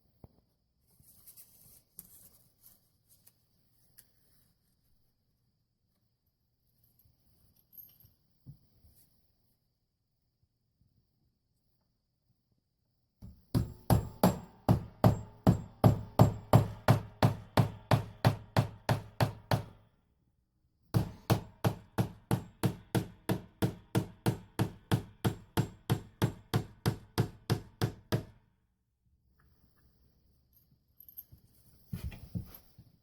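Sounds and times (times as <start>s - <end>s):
hammer striking nails: 13.2s - 19.8s, 20.9s - 28.4s.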